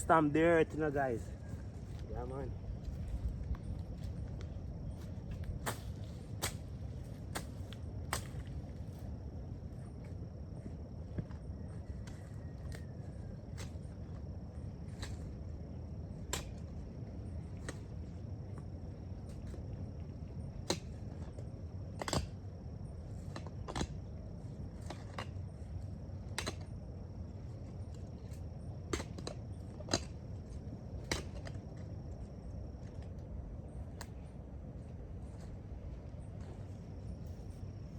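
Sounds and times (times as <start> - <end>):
low steady rumble: 0.0 - 37.9
knocks and thuds in soil: 1.9 - 9.0.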